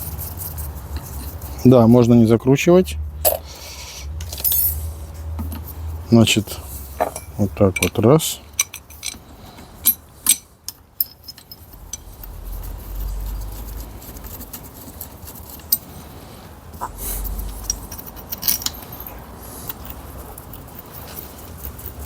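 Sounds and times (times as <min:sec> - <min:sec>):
dull rumble of handling: 0:00.0 - 0:22.0
metal tools clinking: 0:04.2 - 0:05.8, 0:07.0 - 0:12.6, 0:16.8 - 0:22.0.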